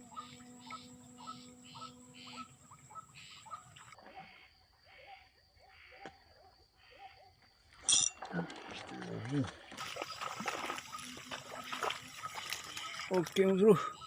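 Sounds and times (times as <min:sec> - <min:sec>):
rhythmic animal calls: 0:00.0 - 0:06.0, 0:09.8 - 0:14.0.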